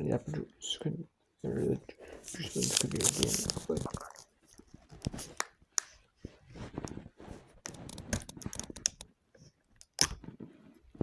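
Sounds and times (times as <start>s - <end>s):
plastic bottle rustling: 2.0s - 6.0s, 6.6s - 9.0s
plastic bottle clicks: 7.7s - 9.0s, 9.8s - 10.3s.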